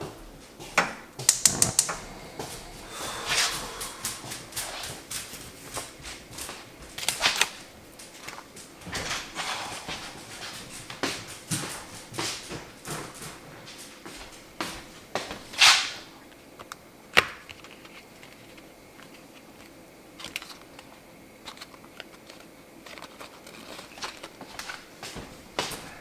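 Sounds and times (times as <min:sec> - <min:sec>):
cookware and utensils clicking: 0:01.2 - 0:02.0.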